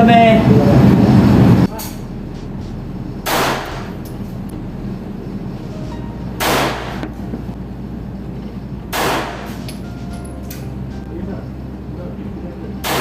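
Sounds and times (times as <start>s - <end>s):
steady low hum: 0.0s - 13.0s
pistol shots: 3.3s - 3.9s, 6.4s - 7.0s, 8.9s - 9.6s.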